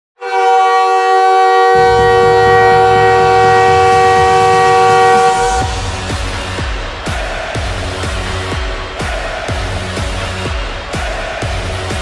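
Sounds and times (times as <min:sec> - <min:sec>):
goal horn chord blast: 0:00.2 - 0:08.0
low rumble: 0:01.8 - 0:07.0.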